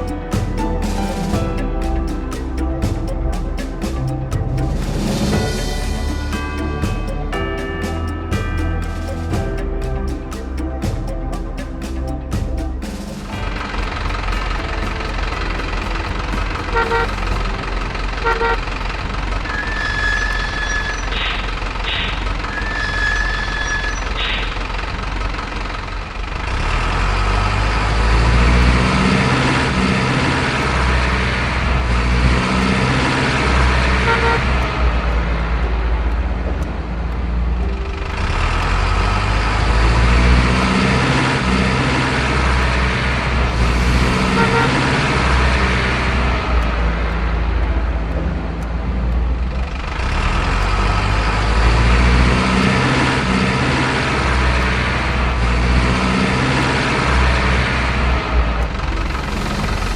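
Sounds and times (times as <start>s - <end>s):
truck horn toot: 16.7s - 17.4s, 18.2s - 18.7s, 33.9s - 34.9s, 43.5s - 46.0s
heavy truck engine running: 24.5s - 59.9s.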